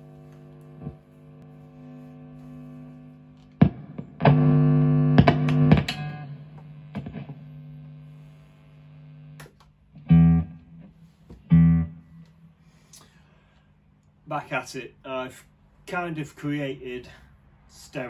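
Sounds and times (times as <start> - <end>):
electric guitar chords: 0.0 - 13.0.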